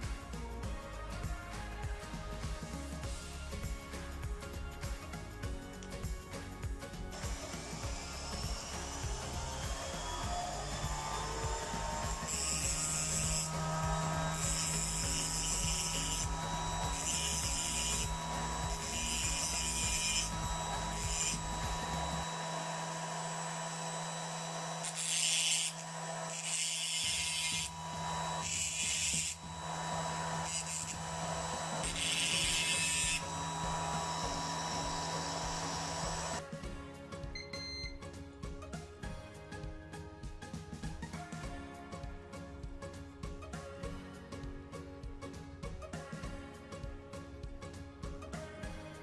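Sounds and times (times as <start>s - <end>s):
electric hair trimmer humming: 0.0s - 36.4s.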